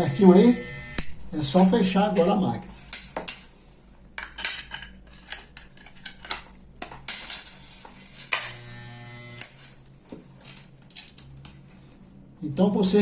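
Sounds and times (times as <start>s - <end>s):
hair clipper motor buzzing: 0.0s - 1.2s, 8.3s - 9.7s.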